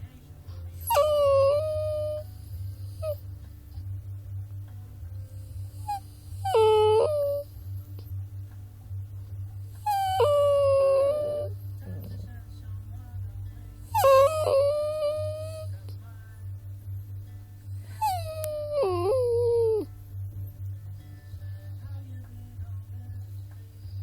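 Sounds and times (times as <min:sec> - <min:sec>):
steady low hum: 0:00.0 - 0:24.0
puppy whining: 0:00.7 - 0:03.4, 0:05.4 - 0:08.2, 0:09.6 - 0:12.4, 0:13.8 - 0:16.0, 0:17.7 - 0:20.6.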